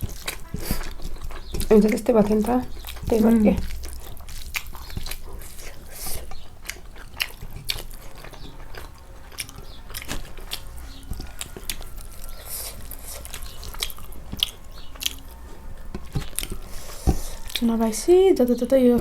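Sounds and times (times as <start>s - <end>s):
mouth smacking clicks: 0.0s - 17.7s
chewing and crunching: 0.0s - 19.0s.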